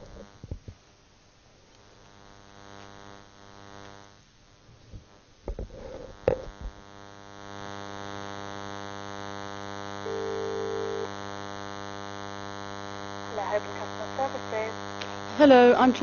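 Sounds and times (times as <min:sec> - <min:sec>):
buzzing hum on phone line: 0:00.0 - 0:16.0
telephone beep: 0:10.1 - 0:11.1.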